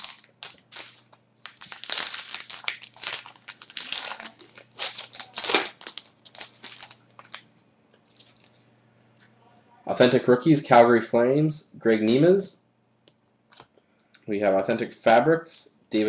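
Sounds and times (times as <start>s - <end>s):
wrapper crinkling and tearing: 0.0s - 7.5s, 8.1s - 8.5s.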